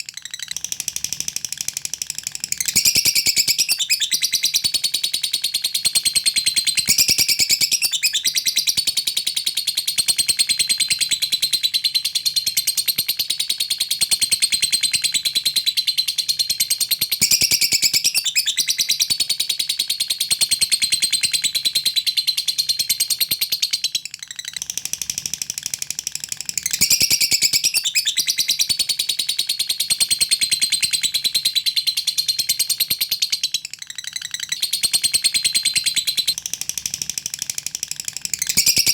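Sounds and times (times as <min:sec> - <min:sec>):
bird high-pitched chatter: 0:20.3 - 0:24.7, 0:38.1 - 0:38.9.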